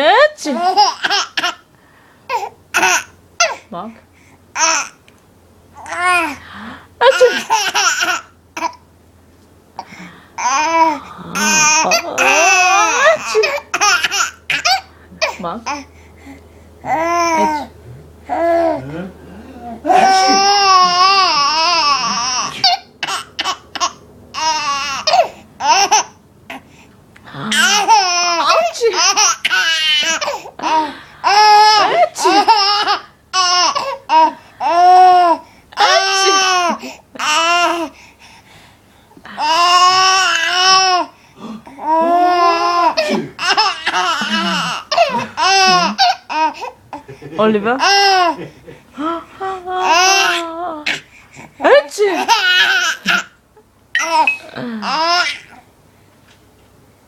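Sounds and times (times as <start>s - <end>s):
baby laughing: 0.5s - 1.6s, 2.3s - 3.6s, 7.0s - 8.8s, 10.4s - 15.8s, 19.9s - 26.2s, 27.5s - 37.9s, 39.4s - 41.1s, 41.8s - 49.1s, 52.1s - 53.4s, 54.0s - 55.6s
baby gasping: 9.8s - 17.7s, 39.4s - 47.0s.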